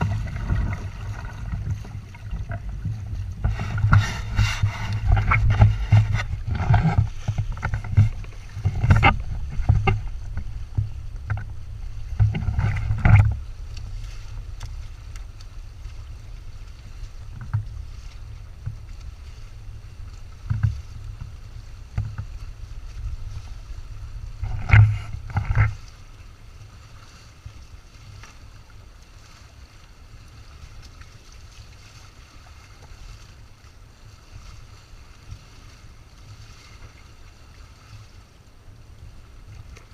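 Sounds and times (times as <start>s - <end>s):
wind buffeting: 0.0s - 13.8s
water rushing and slapping: 0.0s - 39.9s.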